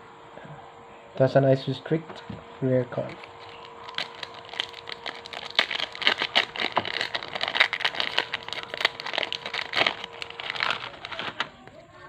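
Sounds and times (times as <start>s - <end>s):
foil wrapper crinkling: 3.1s - 11.8s.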